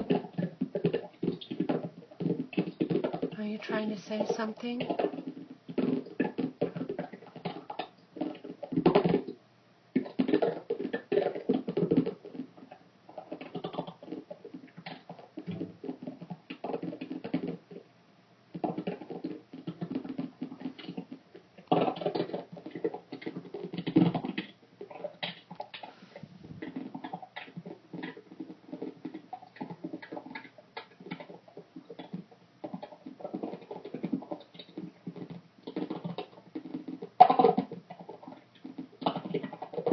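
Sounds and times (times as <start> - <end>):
rapid tapping and scratching: 18.5 - 39.9.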